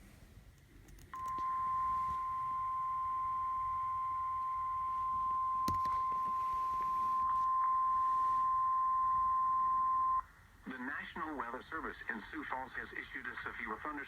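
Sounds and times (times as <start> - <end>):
steady high warning tone: 1.2 - 10.3.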